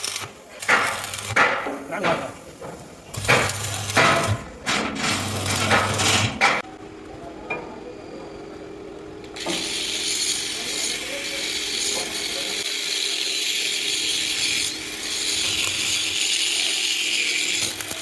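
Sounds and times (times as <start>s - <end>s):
steel knocking and clanking: 0.6s - 6.6s.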